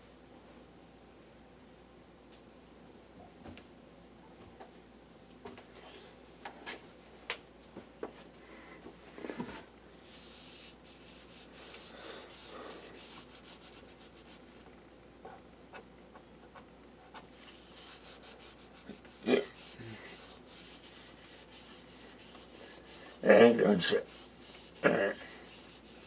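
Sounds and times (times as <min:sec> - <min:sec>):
towel rubbing laptop case: 0:17.5 - 0:26.0.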